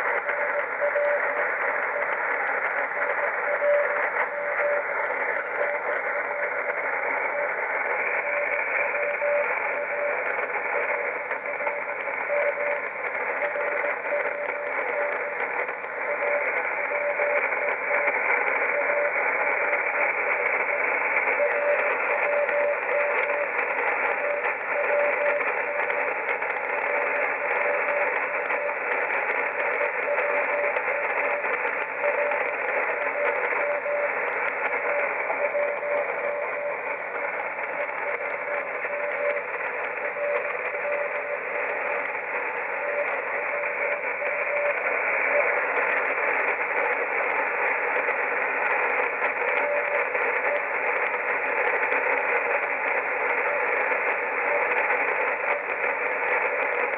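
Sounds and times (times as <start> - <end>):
faint morse code tone: 0.0 - 56.9
shortwave radio hiss and static: 0.0 - 56.9.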